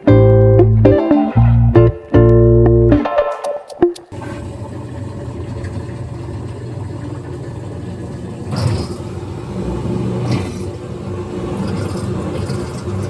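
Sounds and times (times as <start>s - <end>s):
washing machine rumbling: 4.1s - 13.0s.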